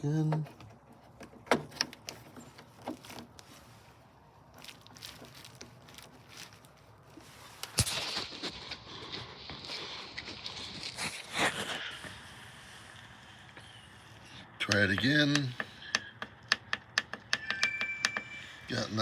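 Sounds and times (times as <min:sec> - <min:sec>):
steady hiss: 0:09.8 - 0:14.3.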